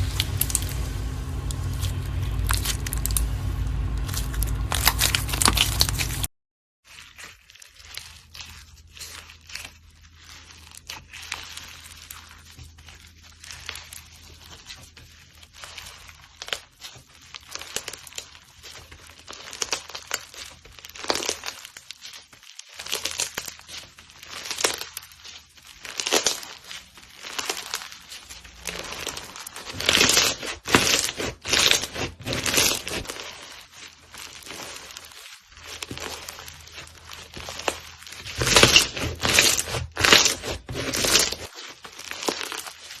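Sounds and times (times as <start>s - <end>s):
slime crackling and crinkling: 0.0s - 43.0s.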